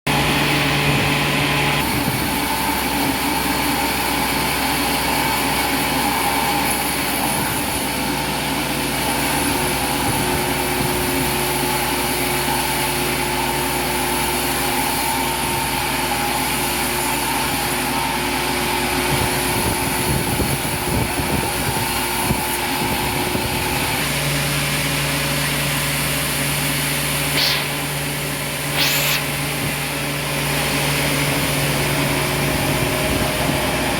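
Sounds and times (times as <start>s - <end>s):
sawmill machinery din: 0.1s - 33.9s
motor hums: 19.1s - 33.9s
short high squeals: 27.3s - 29.5s.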